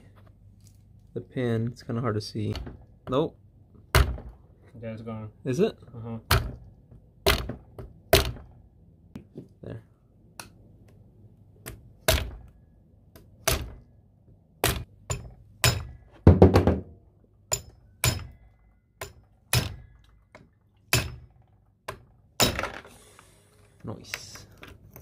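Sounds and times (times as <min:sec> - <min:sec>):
sharp metal knocks: 0:03.9 - 0:04.4, 0:06.3 - 0:08.6, 0:11.6 - 0:12.5, 0:13.2 - 0:13.9, 0:14.6 - 0:16.9, 0:17.5 - 0:20.1, 0:20.9 - 0:22.8.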